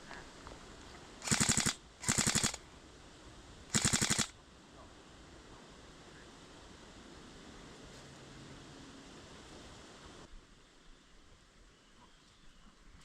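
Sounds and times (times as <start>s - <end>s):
airsoft rifle full-auto bursts: 1.2s - 2.6s, 3.7s - 4.3s.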